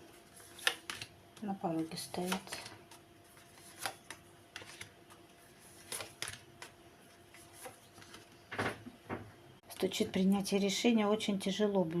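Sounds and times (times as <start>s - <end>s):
cards clicking and tapping: 0.4s - 1.5s, 2.1s - 4.9s.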